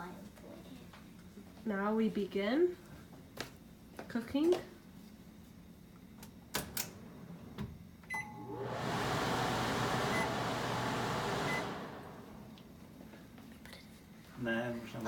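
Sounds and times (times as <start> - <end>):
stove rushing noise with hum: 6.3 - 14.0
stove short beep: 8.1 - 8.6, 10.0 - 12.1.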